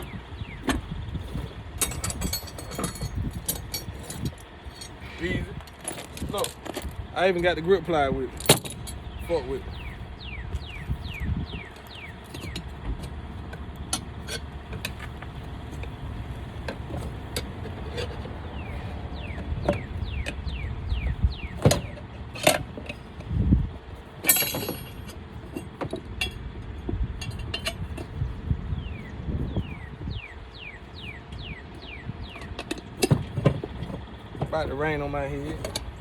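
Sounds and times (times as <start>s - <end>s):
wind rumbling on microphone: 0.0s - 36.0s
hand tools clinking on metal: 0.6s - 9.9s, 10.7s - 20.4s, 21.4s - 23.4s, 24.0s - 26.4s, 27.2s - 28.2s, 32.2s - 36.0s.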